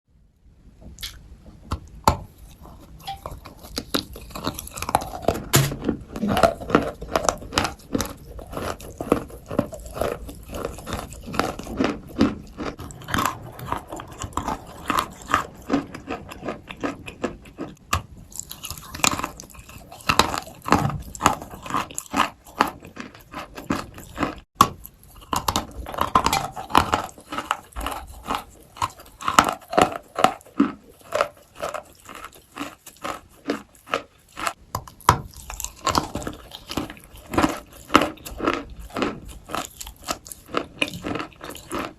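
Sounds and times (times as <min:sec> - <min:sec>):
person crunching dry clay: 0:01.0 - 0:41.9.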